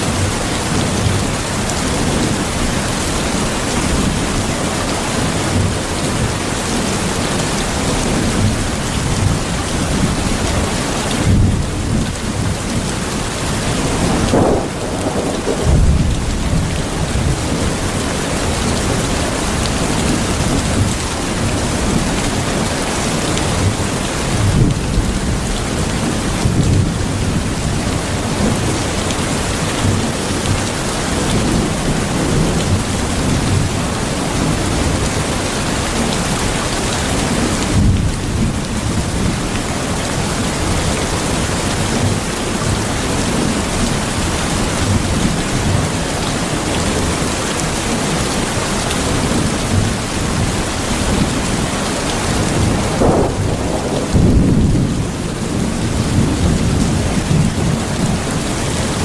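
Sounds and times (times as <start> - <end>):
steady rain: 0.0 - 59.0
thunder rolling: 13.6 - 22.1, 52.2 - 58.1.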